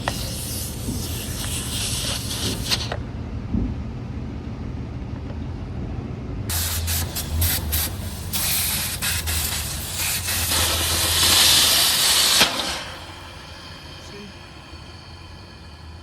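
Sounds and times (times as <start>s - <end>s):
pressure hissing from truck: 0.0s - 3.0s, 6.5s - 16.0s
truck engine running: 0.0s - 16.0s.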